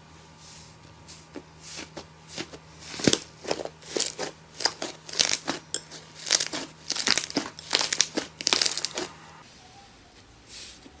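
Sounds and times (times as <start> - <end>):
slime crackling: 1.8 - 9.3.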